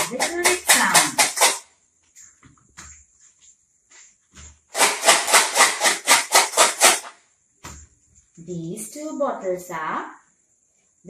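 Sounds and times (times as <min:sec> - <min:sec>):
bottles knocking: 0:00.0 - 0:01.6
bottle rattling when shaken: 0:00.0 - 0:03.1, 0:04.5 - 0:07.1.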